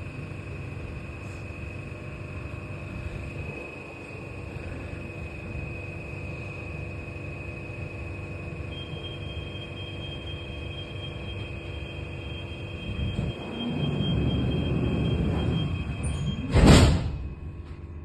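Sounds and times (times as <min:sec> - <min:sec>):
train rumbling with high whine: 0:00.0 - 0:18.0
higher whine: 0:08.6 - 0:18.0.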